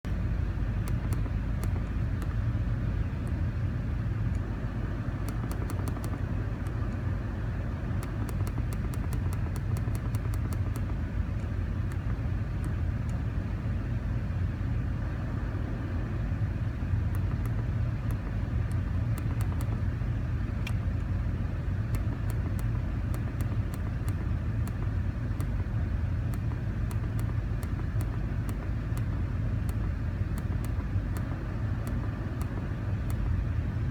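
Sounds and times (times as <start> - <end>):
car engine idling: 0.1 - 33.9
faint sharp ticks: 0.8 - 2.4, 5.2 - 7.0, 8.0 - 13.2, 21.9 - 25.7, 26.3 - 33.4.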